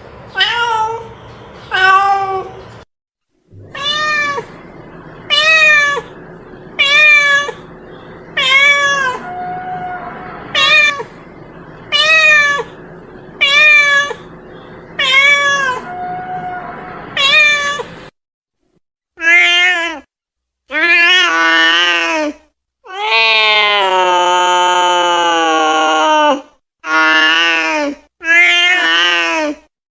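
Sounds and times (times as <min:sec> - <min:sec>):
cat meowing: 0:03.6 - 0:04.6, 0:05.3 - 0:06.2, 0:06.8 - 0:07.6, 0:08.4 - 0:11.2, 0:11.9 - 0:12.8, 0:13.4 - 0:14.3, 0:15.0 - 0:17.9.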